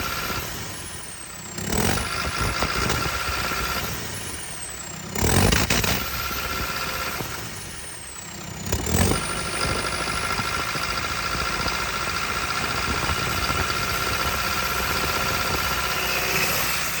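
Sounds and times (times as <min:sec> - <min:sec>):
constant whine: 0:00.0 - 0:17.0
diesel engine running rough: 0:00.0 - 0:17.0.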